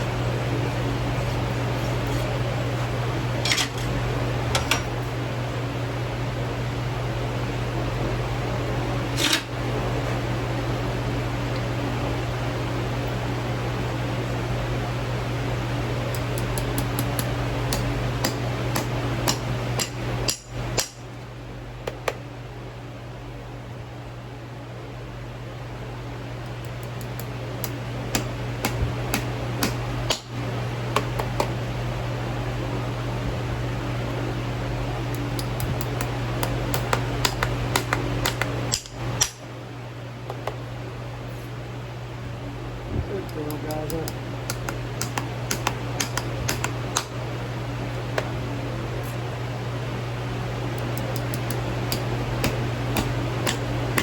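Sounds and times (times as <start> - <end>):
steady low hum: 0.0 - 54.0
hammer tapping on metal: 16.1 - 21.0, 35.4 - 39.4, 43.3 - 47.2, 51.0 - 54.0.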